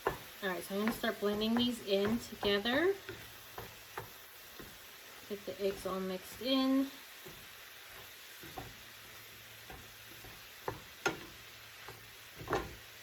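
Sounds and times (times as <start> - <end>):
utensil scraping and knocking pan: 0.0 - 4.8, 7.2 - 8.9, 9.6 - 13.0
food sizzling in a frying pan: 0.0 - 13.0.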